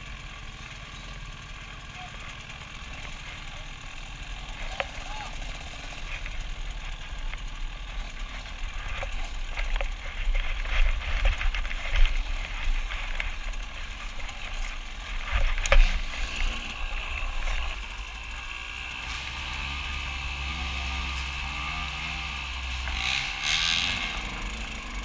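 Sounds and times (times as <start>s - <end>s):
motorcycle knocks and rattles: 0.0s - 18.5s.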